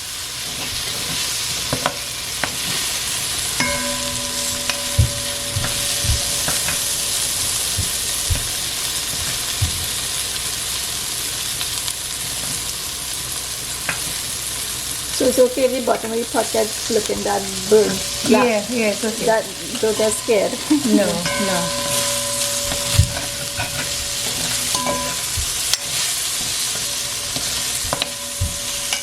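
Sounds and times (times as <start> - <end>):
okra sizzling in oil: 0.0 - 29.0
spoon stirring and knocking pot: 3.6 - 10.0, 15.9 - 29.0.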